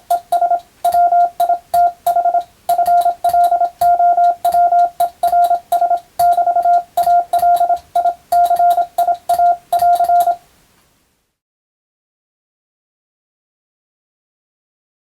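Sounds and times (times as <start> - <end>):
morse code beeps: 0.0 - 10.4
telegraph key clicks: 0.0 - 10.4.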